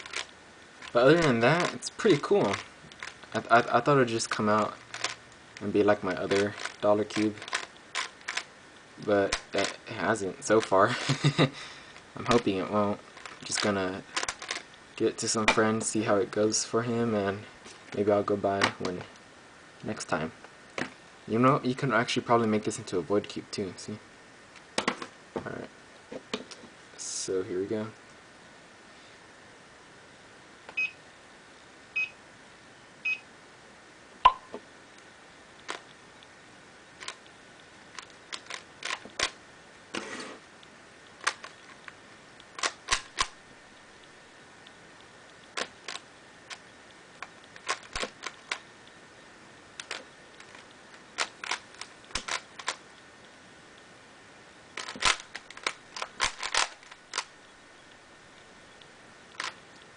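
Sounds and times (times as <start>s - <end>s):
puzzle cube clicking: 6.3s - 8.5s, 41.2s - 41.8s, 42.5s - 43.4s, 47.2s - 48.6s, 49.8s - 52.8s, 54.8s - 57.3s.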